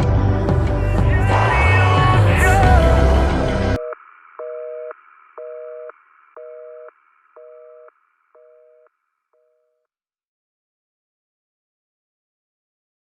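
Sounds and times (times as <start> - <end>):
song music: 0.0 - 4.0
telephone busy signal: 3.8 - 9.5.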